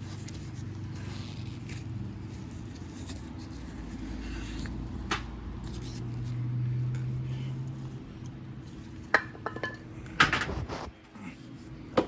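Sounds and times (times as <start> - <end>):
steady low hum: 6.1 - 11.9.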